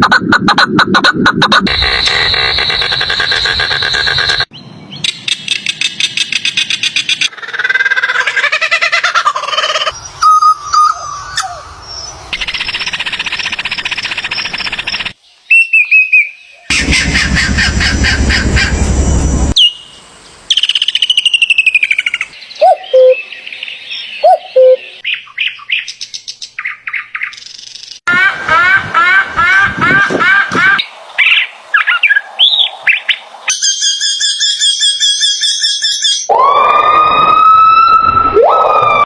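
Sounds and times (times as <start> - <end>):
bird chirps and whistled calls: 8.2 - 16.7, 19.6 - 28.0, 31.2 - 36.3
loud rapid rattling pulse: 16.7 - 19.6.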